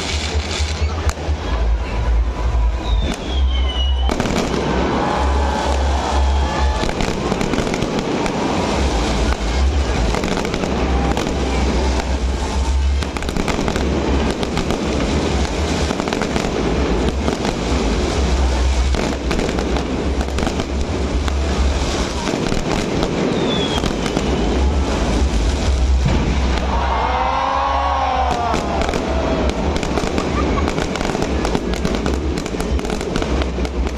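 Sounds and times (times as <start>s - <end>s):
fireworks crackling pops: 0.0s - 1.7s, 2.7s - 33.9s.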